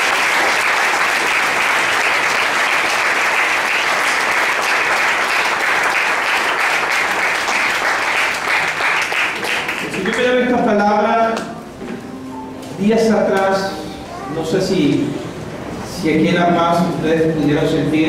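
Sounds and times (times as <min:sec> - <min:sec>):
crowd clapping loudly: 0:00.0 - 0:10.6.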